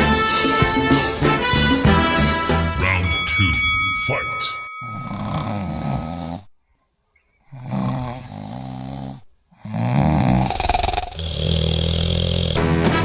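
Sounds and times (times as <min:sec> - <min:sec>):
person snoring loudly: 0:04.9 - 0:06.5, 0:07.4 - 0:13.0.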